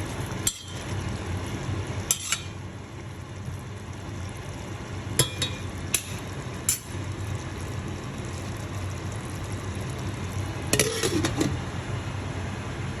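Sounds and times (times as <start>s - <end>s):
curry sizzling in a pan: 0.0s - 11.6s
spoon scraping pan: 10.8s - 11.5s.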